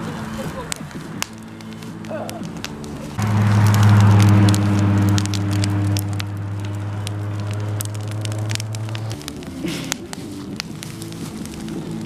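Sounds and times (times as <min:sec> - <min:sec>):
bonfire crackling and popping: 0:00.0 - 0:12.0
low droning tone: 0:02.9 - 0:10.6.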